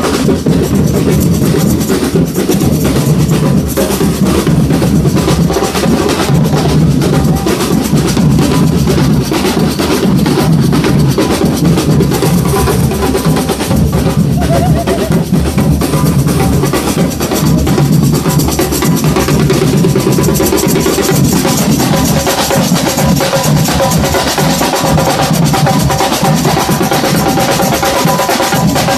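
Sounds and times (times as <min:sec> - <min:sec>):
deep bass drums: 0:00.0 - 0:22.0
samba drum band playing: 0:00.0 - 0:28.9.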